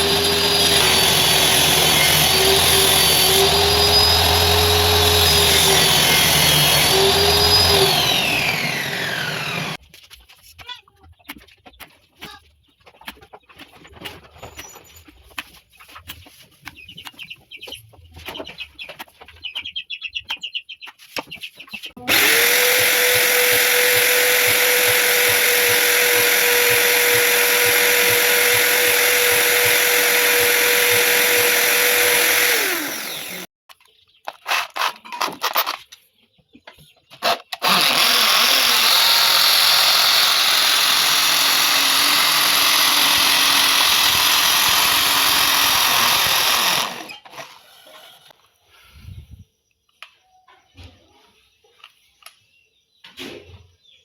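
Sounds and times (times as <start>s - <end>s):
high-speed electric power tool: 0.0s - 9.8s, 22.1s - 33.5s, 37.2s - 47.2s.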